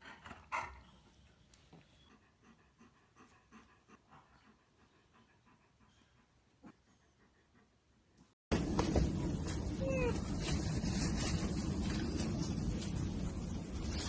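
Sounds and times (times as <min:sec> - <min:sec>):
dog panting: 0:00.0 - 0:08.4.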